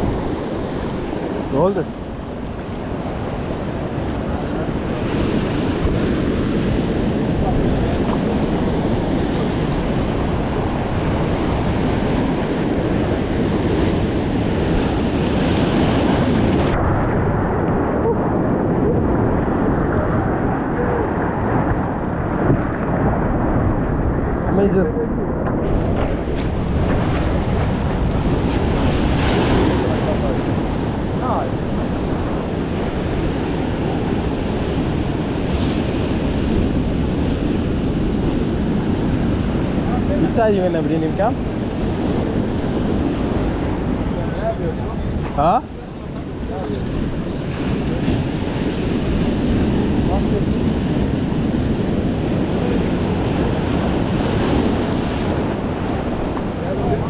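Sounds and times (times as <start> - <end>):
surf washing on rocky shore: 0.0 - 57.0
wind buffeting microphone: 0.0 - 57.0.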